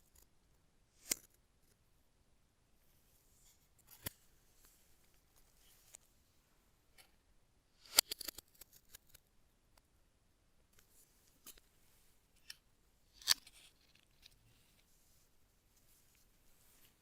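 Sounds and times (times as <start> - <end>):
sharp clicks of small hard objects: 7.8 - 9.2.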